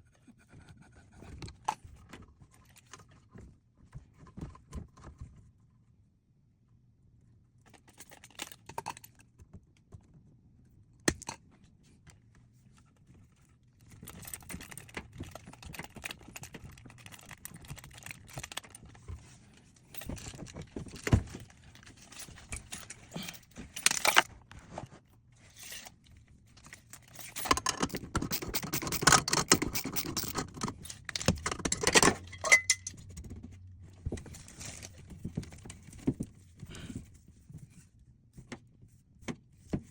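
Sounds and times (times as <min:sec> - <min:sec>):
metal hardware rattling and clinking: 0:14.0 - 0:19.0, 0:19.9 - 0:24.3, 0:26.6 - 0:33.4, 0:34.1 - 0:36.2.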